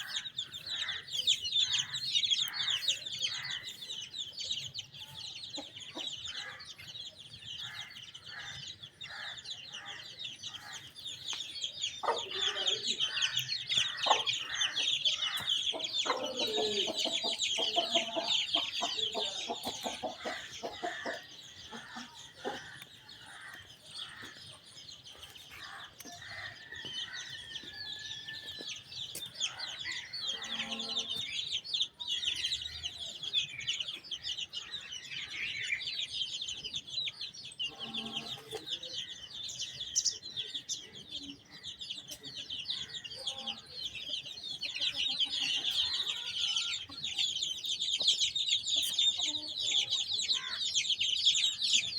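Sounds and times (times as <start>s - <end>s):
chicks peeping: 0.0s - 51.9s
hen clucking: 12.0s - 24.6s, 29.1s - 31.6s, 37.6s - 38.9s, 42.1s - 51.9s.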